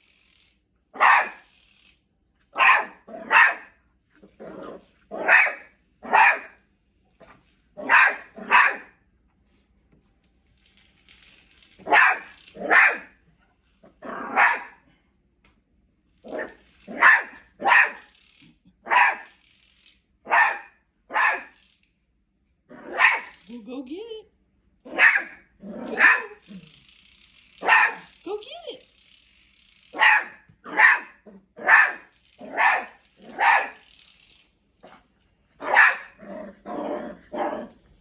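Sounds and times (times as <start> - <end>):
puppy barking: 1.0 - 1.5, 2.5 - 3.8, 4.4 - 6.6, 7.2 - 9.0, 11.8 - 13.2, 14.0 - 14.8, 16.3 - 18.1, 18.8 - 19.4, 20.2 - 21.6, 22.7 - 23.5, 24.9 - 26.8, 27.6 - 28.2, 29.9 - 33.8, 35.6 - 37.8.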